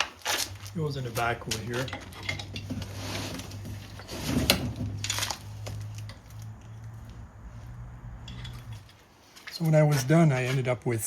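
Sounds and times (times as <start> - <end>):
steady low hum: 0.4 - 9.1.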